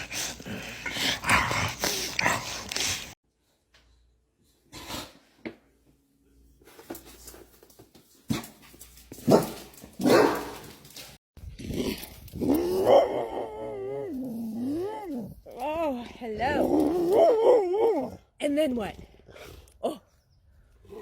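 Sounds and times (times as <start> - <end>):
dog barking: 9.3 - 10.6
dog wavering howl: 12.6 - 15.3.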